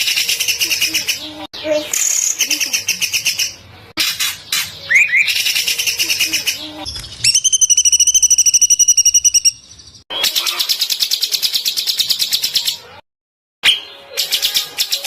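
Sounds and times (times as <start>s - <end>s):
songbird trilling: 4.5s - 11.0s.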